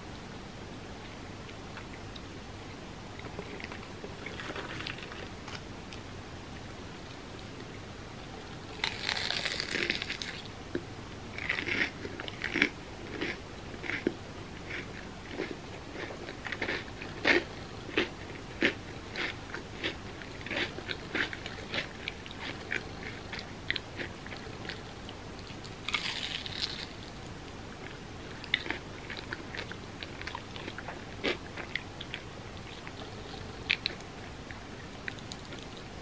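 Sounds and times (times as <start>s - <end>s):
crunchy chewing: 8.7s - 10.5s, 11.4s - 27.2s, 27.8s - 36.0s
crunchy bite into fried bread: 8.8s - 10.4s, 25.9s - 27.1s.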